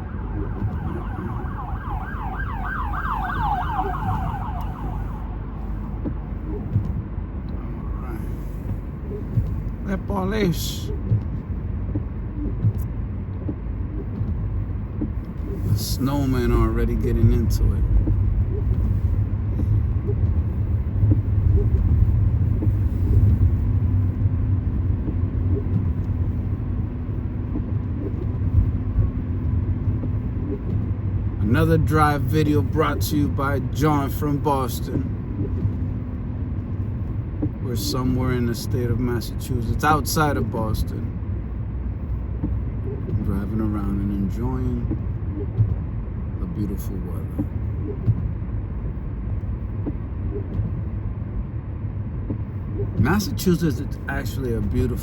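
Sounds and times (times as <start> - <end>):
police siren yelping: 0.0 - 5.6
car driving on road: 0.0 - 55.0
engine and tyre rumble: 0.0 - 55.0.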